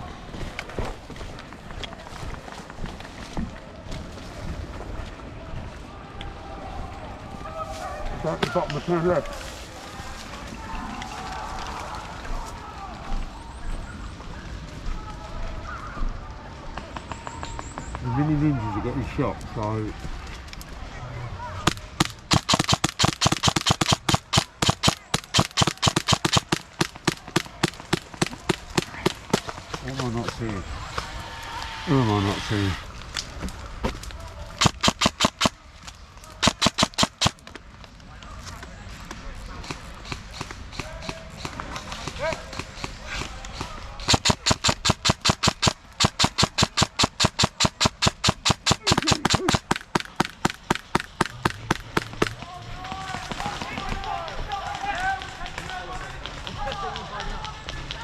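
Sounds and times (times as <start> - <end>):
airsoft guns firing: 21.7 - 30.4, 34.6 - 35.6, 36.4 - 37.5, 39.6 - 55.3.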